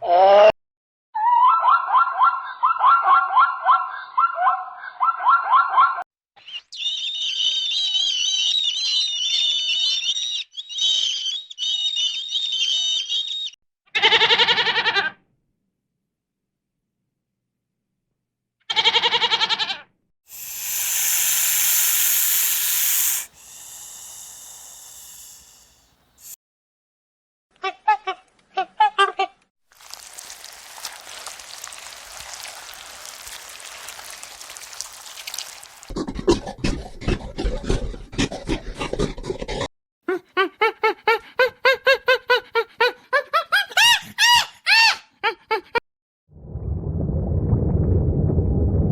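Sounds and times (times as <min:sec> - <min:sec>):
goat bleating: 0:14.0 - 0:15.2, 0:18.7 - 0:19.8
crackling hiss of rain: 0:29.7 - 0:35.9.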